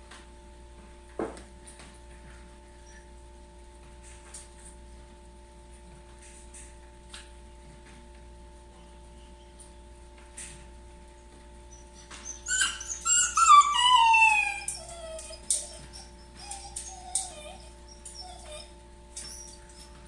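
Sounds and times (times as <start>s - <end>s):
dog whining: 11.7s - 20.0s.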